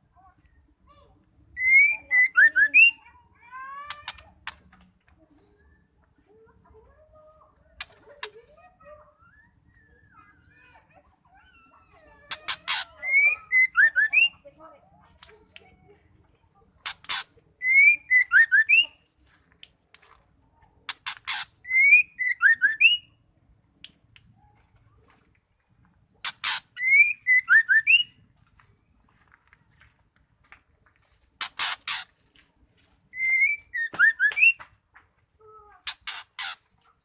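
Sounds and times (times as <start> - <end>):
bird rasping and whistling calls: 1.6 - 3.2, 3.9 - 4.6, 11.3 - 14.4, 16.8 - 19.0, 20.9 - 23.1, 26.2 - 28.2, 31.4 - 32.2, 33.1 - 34.6, 35.8 - 37.0.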